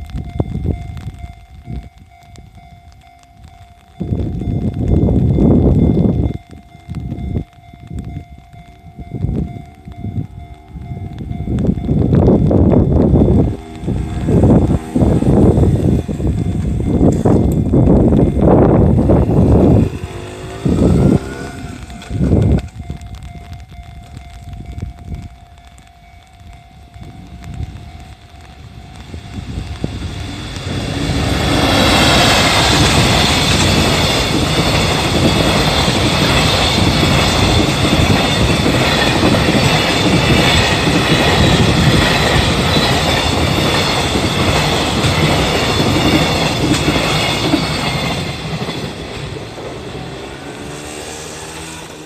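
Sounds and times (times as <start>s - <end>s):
freight train passing: 0.0s - 52.0s
high ringing from wheels: 0.0s - 52.0s
train wheel clatter: 10.8s - 25.7s, 26.5s - 52.0s.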